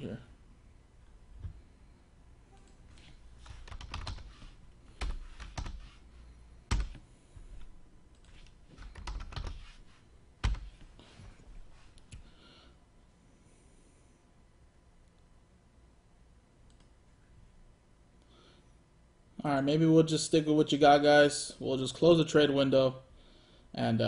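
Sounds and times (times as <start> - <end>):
computer keyboard typing: 3.4 - 6.0, 6.7 - 7.0, 8.2 - 9.8, 10.4 - 10.8.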